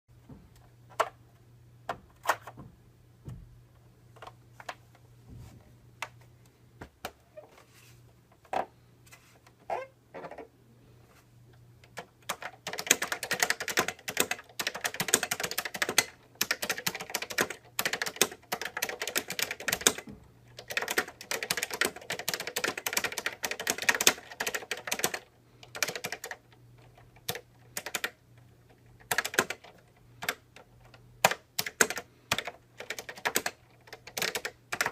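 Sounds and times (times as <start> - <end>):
typing on keyboard: 11.8 - 34.9.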